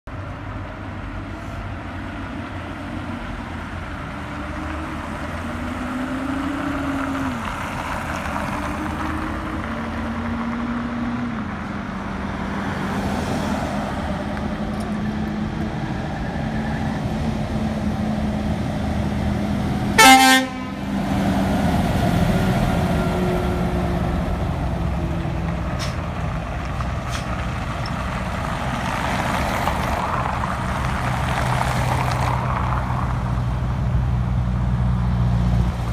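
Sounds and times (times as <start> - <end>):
heavy vehicle engine and road noise: 0.0 - 35.9
truck horn blast: 19.9 - 21.0.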